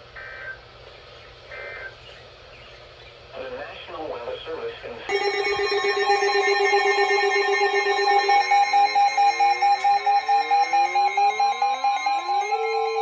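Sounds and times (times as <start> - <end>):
two-pitch pulsing alarm tone: 5.1 - 13.0
upward sweeping tone: 5.1 - 13.0.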